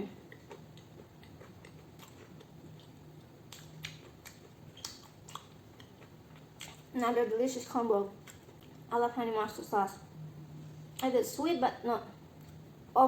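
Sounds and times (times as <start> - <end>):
chewing crunchy food: 0.2 - 7.2, 8.1 - 8.9.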